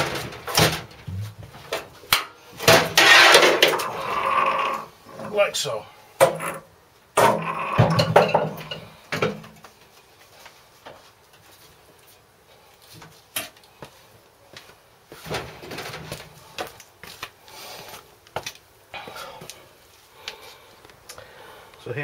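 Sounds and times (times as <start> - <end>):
scrape: 3.0 - 4.1.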